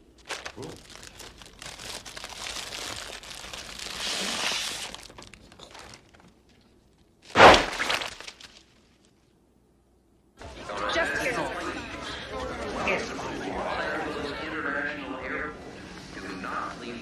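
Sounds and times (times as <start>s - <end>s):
rustling and crinkling: 0.0s - 9.3s
loud crash: 7.3s - 8.2s.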